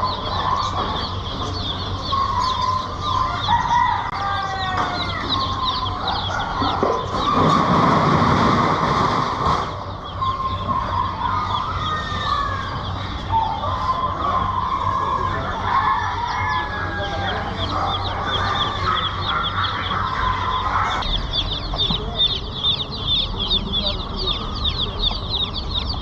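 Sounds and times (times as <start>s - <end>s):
sliding bird calls: 0.0s - 16.4s
birds chirping: 0.0s - 26.0s.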